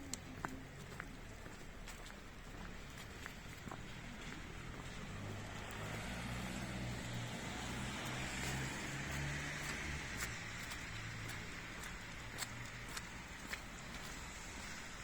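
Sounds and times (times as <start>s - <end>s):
footstep clicks: 0.0s - 5.0s, 8.0s - 14.9s
street noise: 0.0s - 15.0s
car engine passing: 2.8s - 15.0s.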